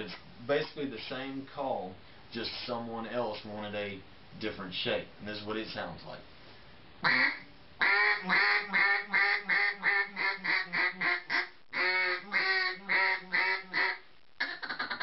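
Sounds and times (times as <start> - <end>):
duck call quacks: 7.0 - 15.0.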